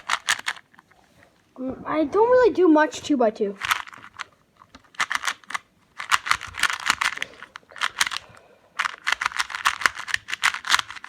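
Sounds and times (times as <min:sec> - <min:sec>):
puzzle cube layers clicking: 0:00.0 - 0:00.7, 0:03.6 - 0:11.0.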